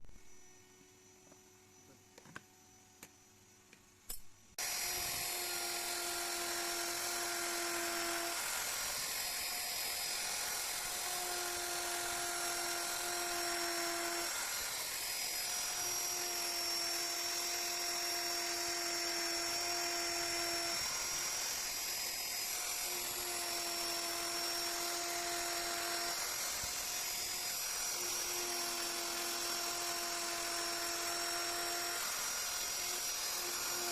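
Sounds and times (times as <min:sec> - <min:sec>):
power tool carving wood: 0:04.6 - 0:33.9.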